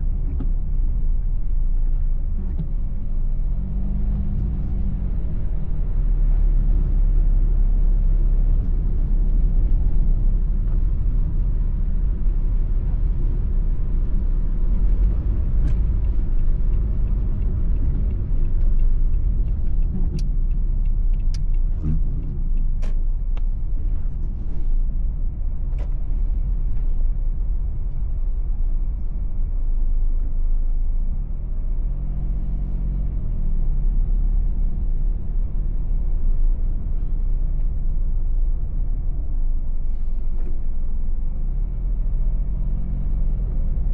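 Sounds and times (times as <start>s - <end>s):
car engine and road rumble: 0.0s - 43.9s.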